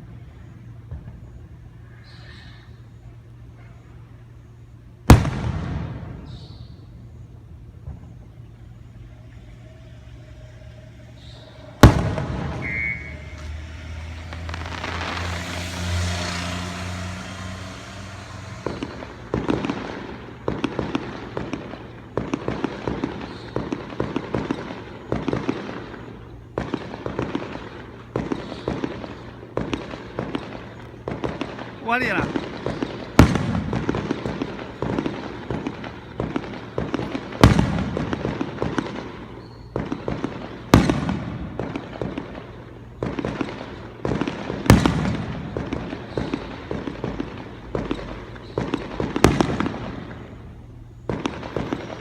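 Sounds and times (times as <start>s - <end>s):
firework crackling pops: 0.0s - 3.1s, 5.0s - 52.0s
firework bangs: 0.0s - 52.0s
firework hissing rush: 8.9s - 23.8s.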